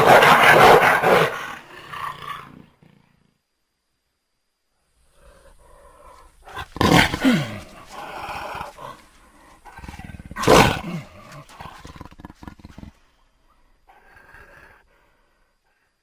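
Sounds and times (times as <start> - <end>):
jaguar roaring: 0.0 - 3.2, 5.1 - 9.0, 9.6 - 13.0
rough growling: 0.0 - 3.4, 5.1 - 15.5.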